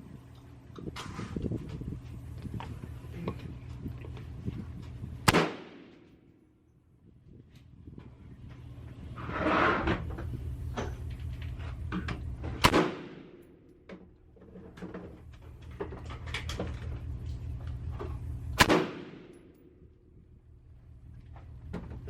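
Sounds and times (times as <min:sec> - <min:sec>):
gunshots with echo: 0:05.3 - 0:06.1, 0:12.6 - 0:13.4, 0:18.6 - 0:19.4.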